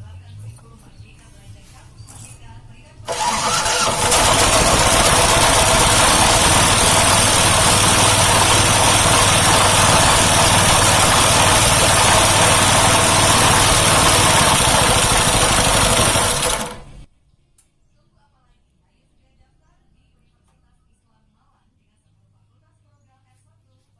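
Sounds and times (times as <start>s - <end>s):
air compressor engine running: 3.1s - 17.1s.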